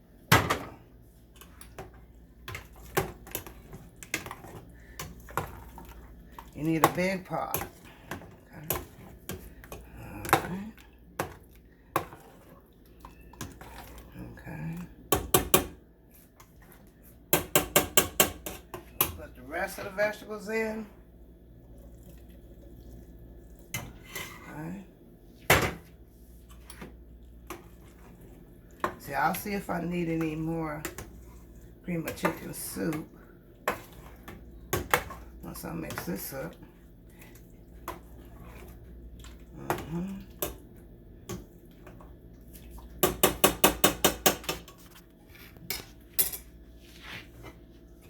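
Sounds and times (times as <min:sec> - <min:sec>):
utensil knocking against a pot: 0:43.0 - 0:44.6.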